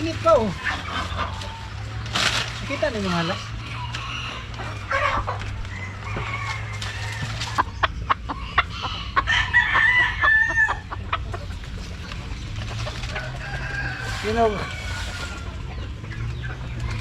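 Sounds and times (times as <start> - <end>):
chickens clucking: 0.0 - 17.0
rooster crowing: 3.3 - 7.7, 8.6 - 11.0, 13.1 - 15.7.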